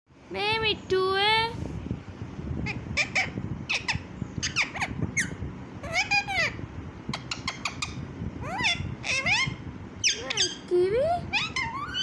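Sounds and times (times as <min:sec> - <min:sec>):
parrot squeaky chirps: 0:02.6 - 0:12.0
parrot rising and falling call: 0:11.3 - 0:12.0.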